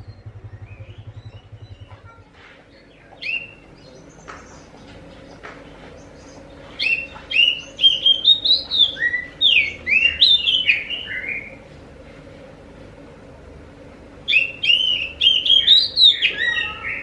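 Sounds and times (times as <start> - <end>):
bird singing whistled notes: 0.0 - 1.9, 3.2 - 4.2, 6.8 - 11.6, 14.3 - 17.0.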